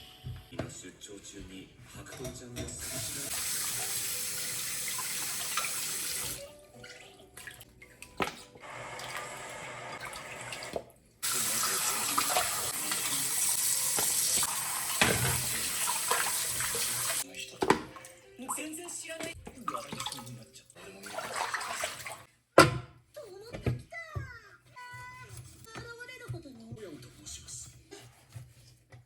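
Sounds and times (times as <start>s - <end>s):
tap running into sink: 10.0s - 17.9s.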